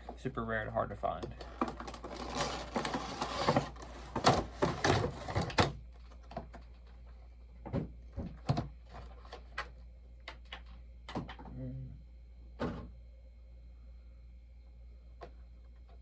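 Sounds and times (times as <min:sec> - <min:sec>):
packaging rubbing and scraping: 0:01.6 - 0:05.7.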